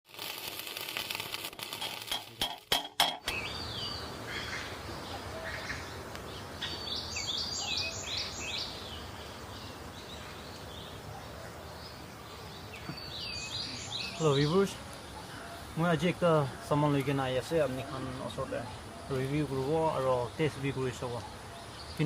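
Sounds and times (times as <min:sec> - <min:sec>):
outdoor background noise: 0:00.0 - 0:22.0
small birds chirping: 0:03.2 - 0:22.0.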